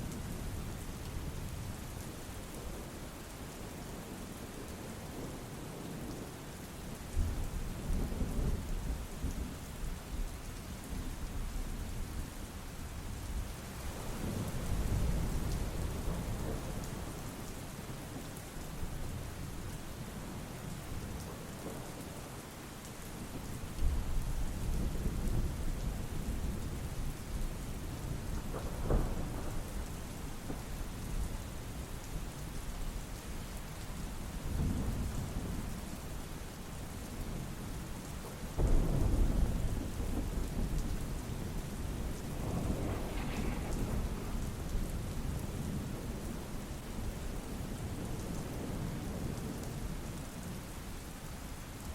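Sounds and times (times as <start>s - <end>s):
steady rain: 0.0s - 51.9s
sharp thunder crack: 38.6s - 45.4s
thunder rolling: 38.6s - 46.4s.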